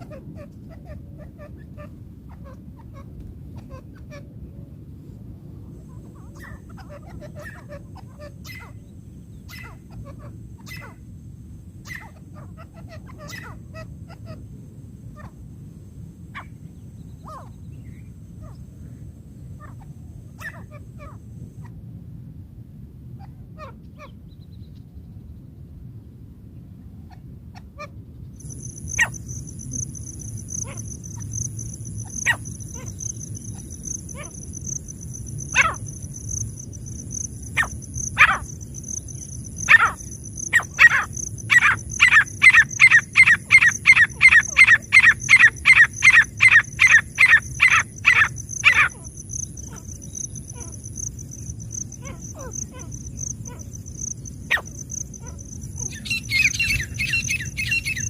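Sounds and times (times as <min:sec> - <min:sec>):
francolin sharp calls: 0:28.4 - 0:58.0.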